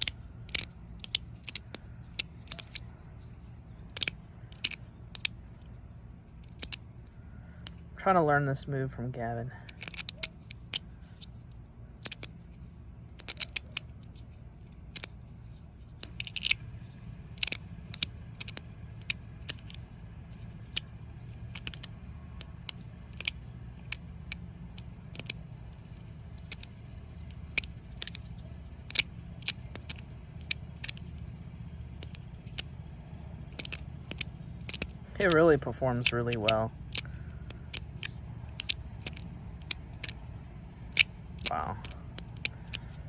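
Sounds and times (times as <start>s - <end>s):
magnetic slider clicking shut: 0.0s - 2.8s, 3.9s - 5.7s, 6.4s - 6.8s, 9.7s - 10.8s, 12.0s - 12.3s, 13.2s - 13.9s, 14.9s - 15.2s, 16.0s - 16.6s, 17.4s - 19.9s, 21.6s - 24.0s, 24.8s - 25.4s, 26.4s - 26.7s, 27.3s - 31.0s, 32.0s - 32.8s, 33.5s - 40.2s, 40.9s - 43.0s
steady low hum: 0.0s - 43.0s.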